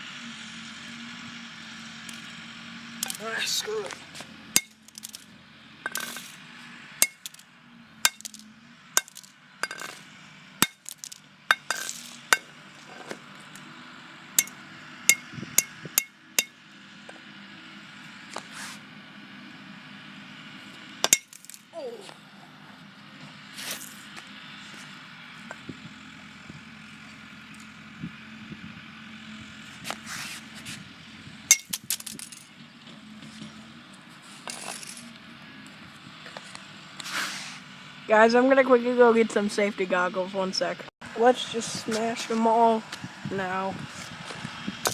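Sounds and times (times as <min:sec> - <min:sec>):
plastic pieces knocking and scraping: 0:04.6 - 0:05.2, 0:10.6 - 0:12.5.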